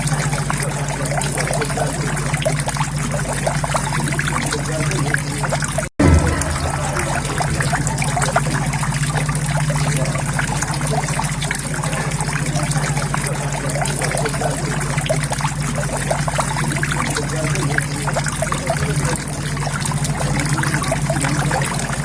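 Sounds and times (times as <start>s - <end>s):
water trickling and splashing: 0.0s - 22.0s
steady low hum: 6.0s - 16.1s.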